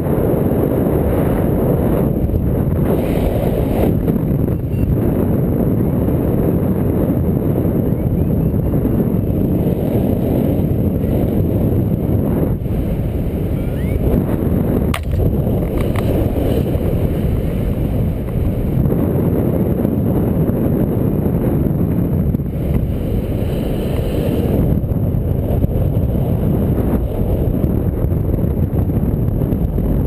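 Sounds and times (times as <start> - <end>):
wind buffeting microphone: 0.0 - 30.0.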